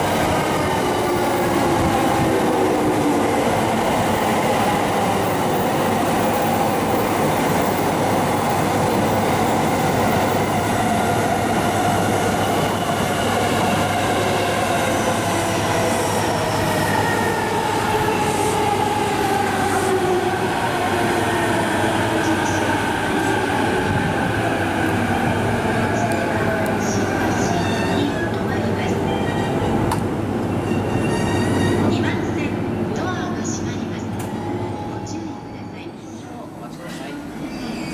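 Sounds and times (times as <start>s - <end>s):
electric train rumbling on rails: 0.0s - 37.9s.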